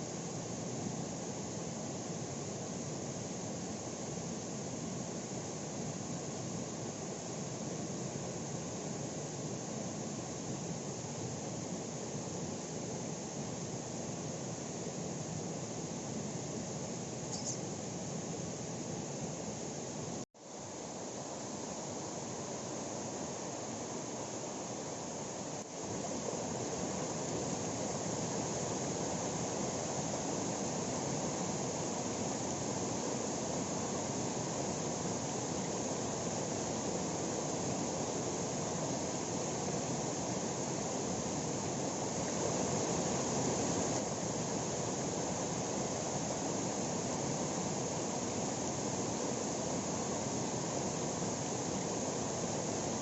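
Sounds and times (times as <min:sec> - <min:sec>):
faint click: 0:17.3 - 0:17.6.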